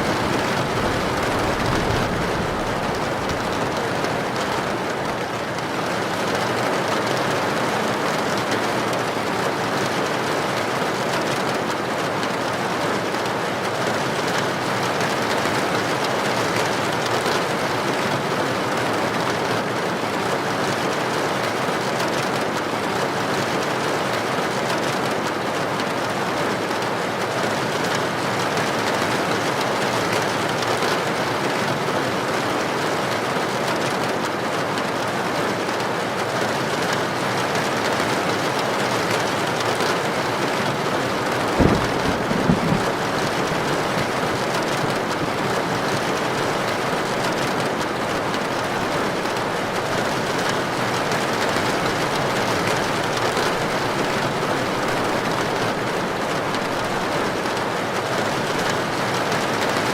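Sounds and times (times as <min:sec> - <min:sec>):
thunder crack: 0:00.0 - 0:05.2, 0:41.1 - 0:46.4
heavy rain on a tin roof: 0:00.0 - 0:59.9.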